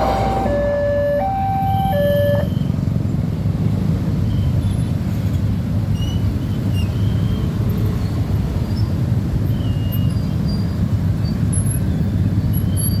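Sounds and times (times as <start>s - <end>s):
passing train rumble: 0.0s - 4.3s.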